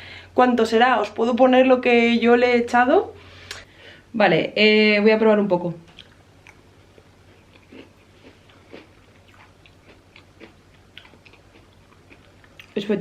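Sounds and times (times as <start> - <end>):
person chewing crunchy food: 6.0 - 12.8.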